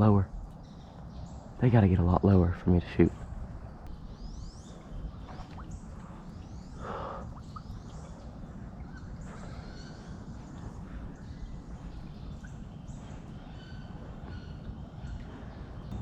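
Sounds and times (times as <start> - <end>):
steady low rumble: 0.0 - 16.0.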